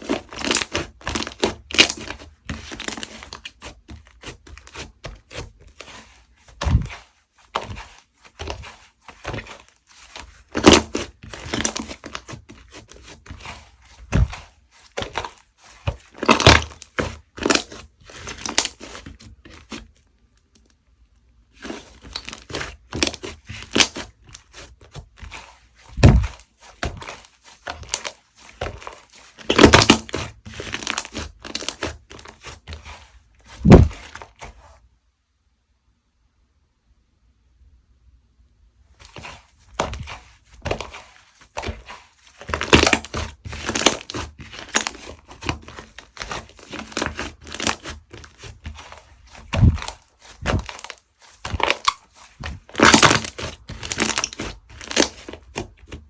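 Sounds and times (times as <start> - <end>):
slime crackling and popping: 0.1 - 3.6, 16.0 - 19.1, 22.0 - 24.5, 26.0 - 32.4, 41.6 - 56.0
slime slapped with dull thumps: 33.6 - 34.0.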